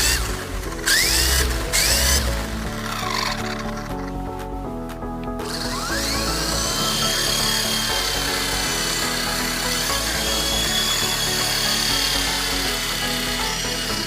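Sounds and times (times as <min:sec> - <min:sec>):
background music: 0:00.0 - 0:14.0
firework hissing with high whine: 0:05.8 - 0:14.0.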